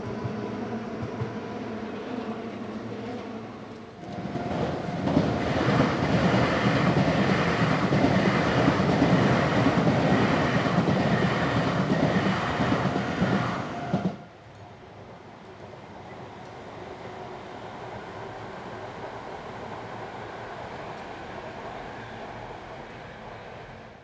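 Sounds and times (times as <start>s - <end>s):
train wheels clattering over rails: 4.1s - 14.7s.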